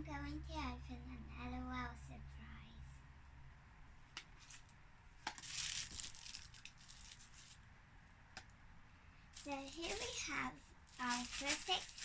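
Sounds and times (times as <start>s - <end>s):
plastic wrapping tearing and crinkling: 5.3s - 7.6s, 9.4s - 10.2s, 10.9s - 12.0s.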